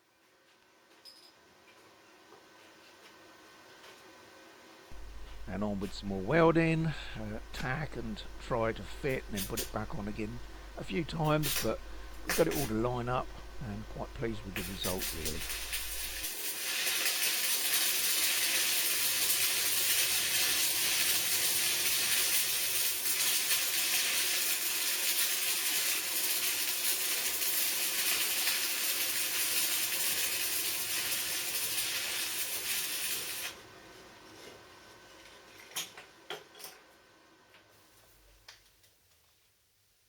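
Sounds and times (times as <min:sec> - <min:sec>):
welding arc sizzling: 0:04.9 - 0:33.6.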